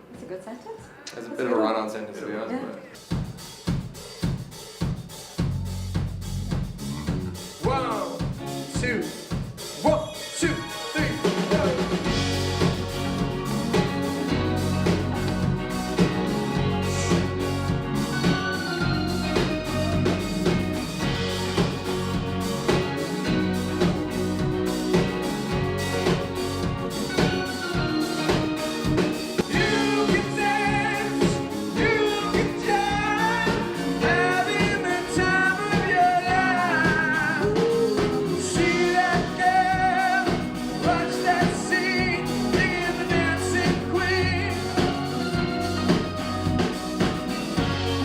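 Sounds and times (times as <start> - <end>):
rock band playing: 3.0 - 48.0
lead vocal singing: 9.9 - 12.8, 14.8 - 24.2, 27.1 - 46.5.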